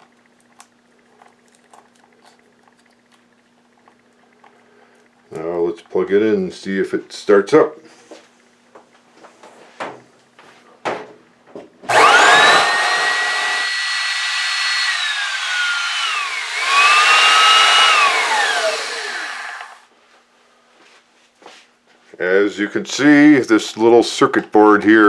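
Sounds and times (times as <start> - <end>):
vacuum cleaner motor whine: 11.9 - 19.8.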